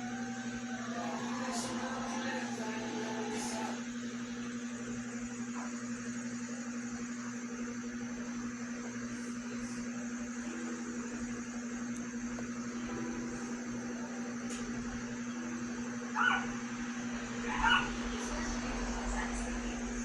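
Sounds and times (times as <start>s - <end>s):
steady background hum: 0.0s - 20.0s
dog barks: 16.2s - 16.6s, 17.4s - 17.9s.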